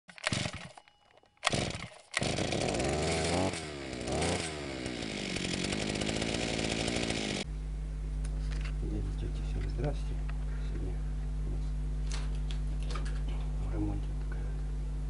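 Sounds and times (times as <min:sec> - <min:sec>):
chainsaw revving and running: 0:00.2 - 0:00.7, 0:01.5 - 0:07.5.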